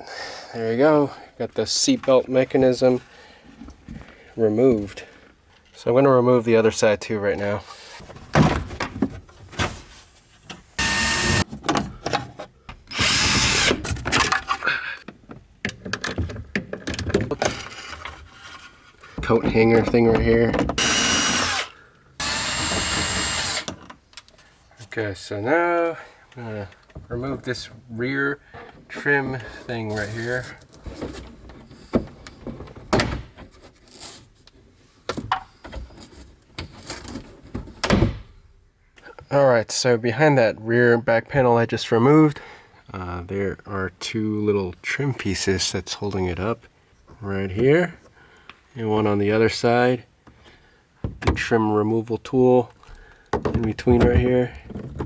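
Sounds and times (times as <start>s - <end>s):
power drill bursts: 10.8s - 11.4s, 12.9s - 13.8s, 20.8s - 23.7s.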